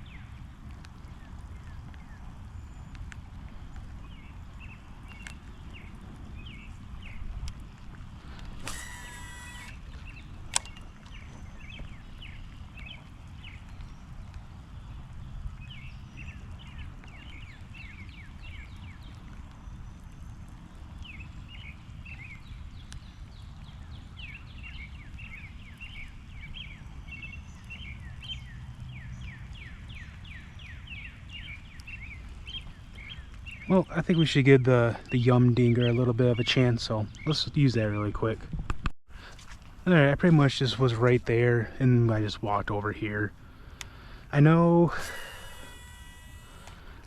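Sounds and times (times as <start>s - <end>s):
small birds chirping: 0.0s - 38.5s, 39.2s - 47.0s
brief whir: 8.5s - 9.8s, 45.0s - 47.0s
sharp click: 10.5s - 10.9s.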